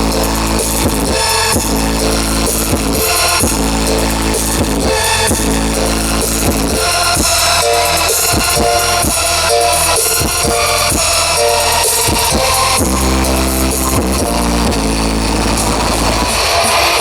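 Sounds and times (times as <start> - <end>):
deep bass: 0.0 - 16.5
drum kit hits: 4.3 - 14.9.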